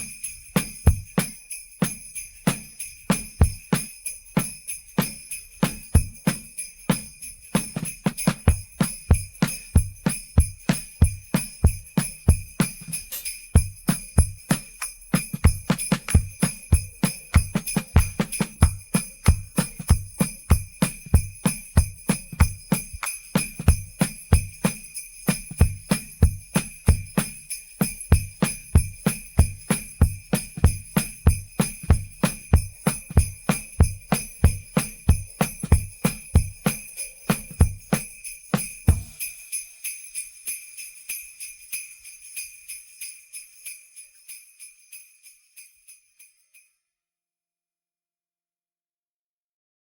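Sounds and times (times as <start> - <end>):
steady drum beat: 0.0 - 39.3
sleigh bells jingling: 0.0 - 46.8.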